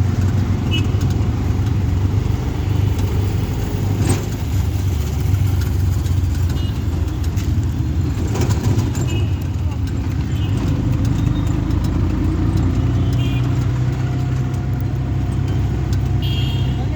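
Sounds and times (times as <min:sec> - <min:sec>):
auto rickshaw engine running: 0:00.0 - 0:16.9.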